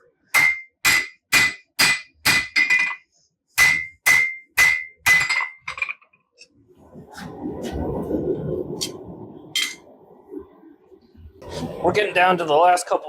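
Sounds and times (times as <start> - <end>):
hammer striking steel on anvil: 0.3 - 3.0, 3.6 - 5.6.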